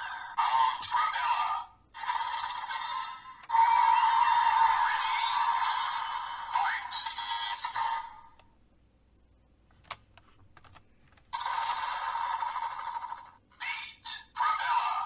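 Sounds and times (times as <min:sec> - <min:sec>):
plastic clicks: 0:09.7 - 0:11.8.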